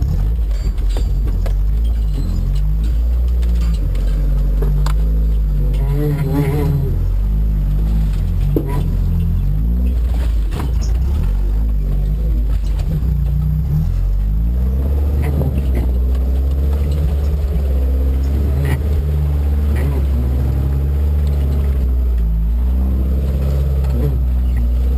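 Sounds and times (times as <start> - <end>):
knocks over rough ground: 0.0 - 6.6, 7.8 - 19.3
car engine driving off-road: 0.0 - 24.9.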